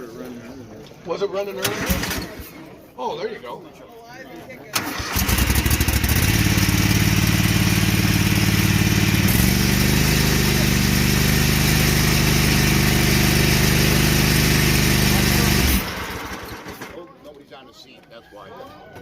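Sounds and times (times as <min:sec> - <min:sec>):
lawn mower engine running: 0:01.6 - 0:02.5, 0:04.7 - 0:17.0.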